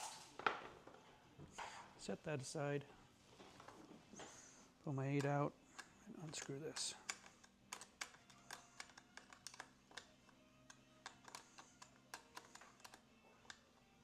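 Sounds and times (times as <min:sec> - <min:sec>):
small metal clicks and taps: 0:05.1 - 0:13.6.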